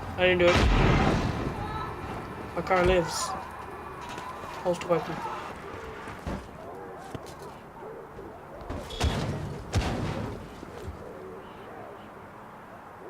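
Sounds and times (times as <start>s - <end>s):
game ambience: 0.0s - 13.0s
video game bangs: 0.3s - 6.4s.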